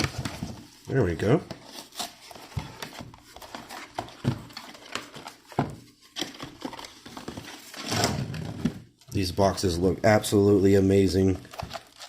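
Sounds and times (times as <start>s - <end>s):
cardboard scraping and rustling: 0.0s - 8.9s.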